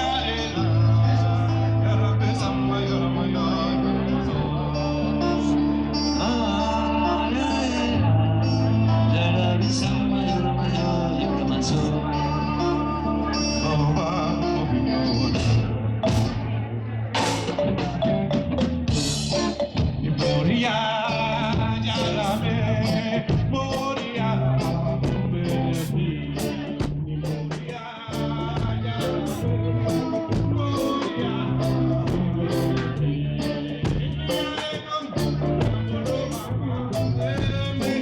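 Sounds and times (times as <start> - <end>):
live band with singing: 0.0 - 38.0
steady bass line: 0.0 - 38.0
drums: 15.3 - 38.0.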